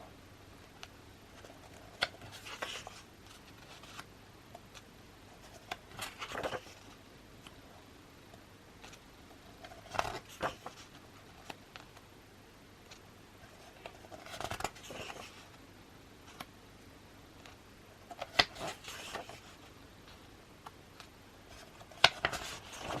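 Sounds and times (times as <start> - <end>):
paper rustling: 1.4 - 4.1, 5.4 - 7.0, 9.6 - 11.6, 13.6 - 15.5, 18.1 - 19.7, 21.5 - 23.0.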